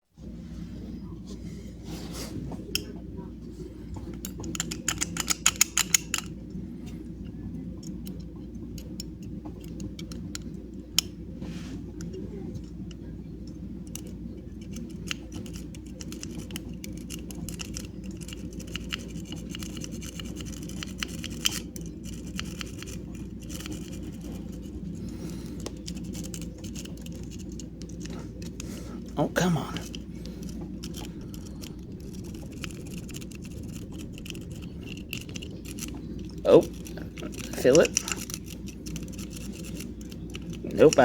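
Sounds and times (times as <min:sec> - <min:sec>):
low hum: 0:00.0 - 0:41.0
lock pick clicking in padlock: 0:04.5 - 0:06.3.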